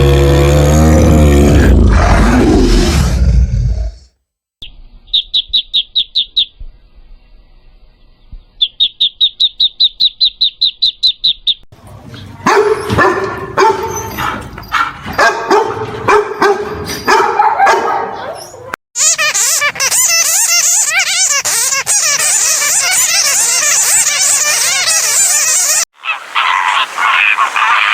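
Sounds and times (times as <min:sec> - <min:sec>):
bird chirping rapidly: 0:04.6 - 0:07.4, 0:08.0 - 0:11.7
dog barking: 0:12.4 - 0:18.6.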